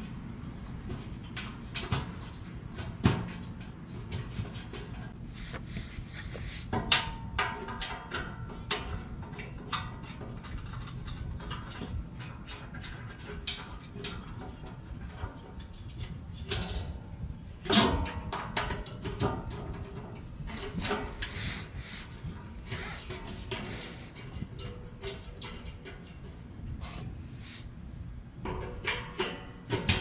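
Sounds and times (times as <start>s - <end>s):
tools and parts clicking and knocking: 6.6s - 17.0s, 17.6s - 27.1s, 28.4s - 30.0s.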